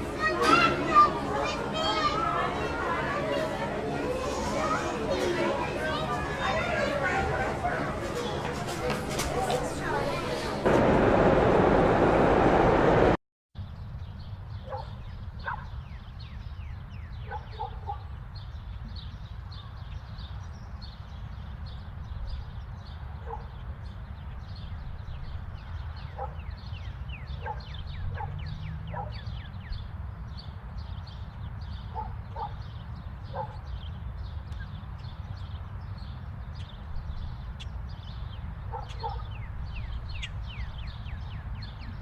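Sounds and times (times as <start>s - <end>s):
birds chirping: 0.0s - 10.7s, 14.0s - 42.0s
loud noisy ambience: 0.0s - 13.2s
steady low rumble: 10.6s - 13.2s
distant dog barks: 14.6s - 15.8s, 17.2s - 18.1s, 23.2s - 23.6s, 26.1s - 26.6s, 27.3s - 29.3s, 31.9s - 32.7s, 33.3s - 33.7s, 38.6s - 39.5s.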